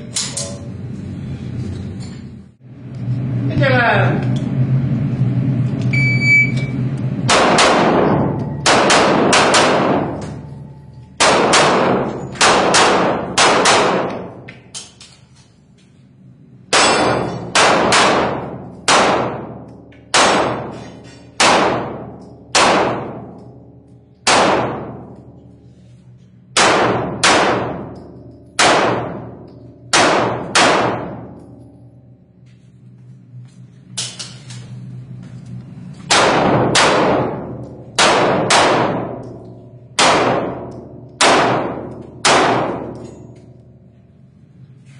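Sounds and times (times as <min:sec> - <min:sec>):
electronic shot-timer beep: 0:05.9 - 0:06.8
handgun shots: 0:29.9 - 0:31.3, 0:40.0 - 0:43.1.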